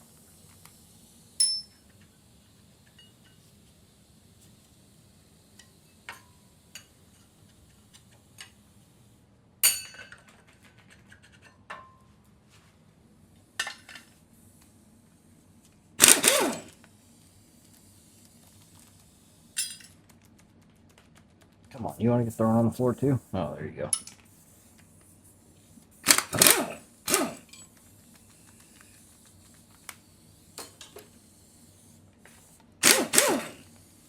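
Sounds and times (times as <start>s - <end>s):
metal parts clinking and clanking: 19.6s - 20.0s.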